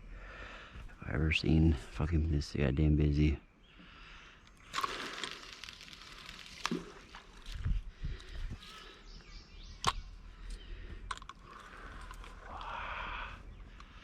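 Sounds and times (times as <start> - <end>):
running water hiss: 4.7 - 7.6.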